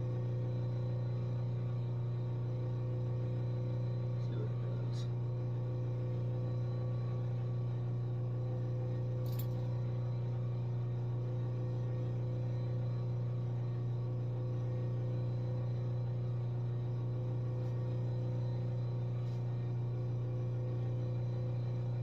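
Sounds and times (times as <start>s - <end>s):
low electrical hum: 0.0s - 22.0s.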